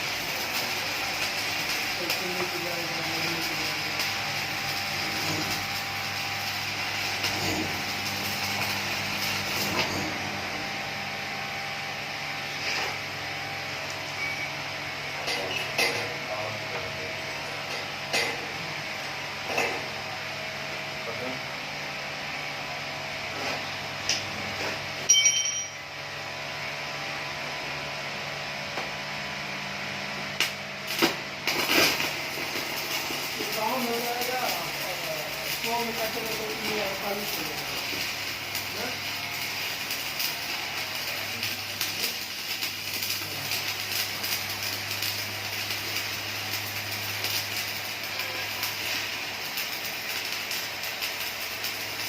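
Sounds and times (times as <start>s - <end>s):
workshop hiss and hum: 0.0s - 52.0s
steel struck ringing: 25.1s - 25.8s.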